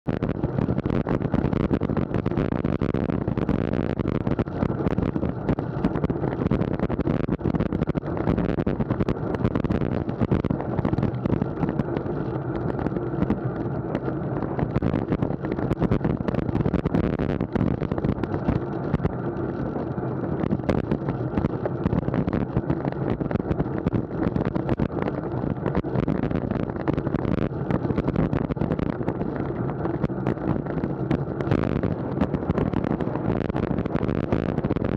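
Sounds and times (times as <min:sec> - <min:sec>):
wind buffeting microphone: 0:00.1 - 0:34.9
road noise: 0:07.9 - 0:34.9.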